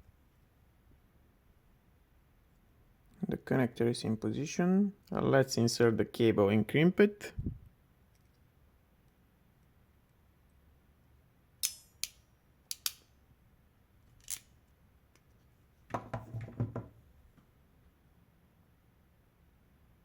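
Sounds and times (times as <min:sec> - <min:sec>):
ratchet crimping pliers clicking: 0:11.6 - 0:13.0.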